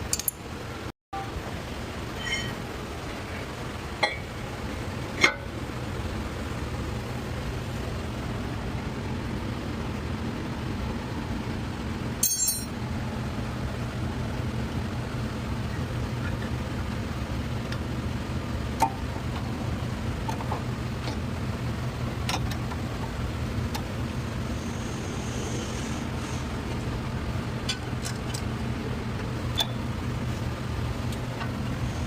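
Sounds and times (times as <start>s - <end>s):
steady low hum: 0.0s - 32.0s
metal tools clinking: 0.1s - 0.4s, 12.2s - 12.8s.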